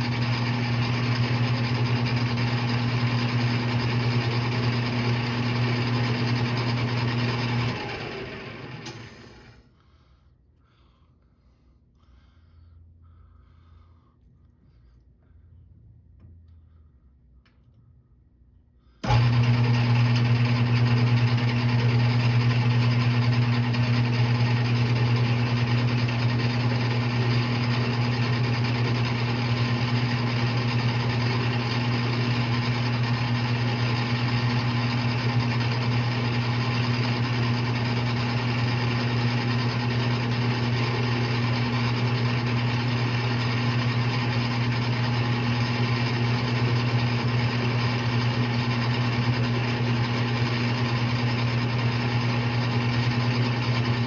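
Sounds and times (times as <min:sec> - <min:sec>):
metal lathe humming: 0:19.0 - 0:54.0.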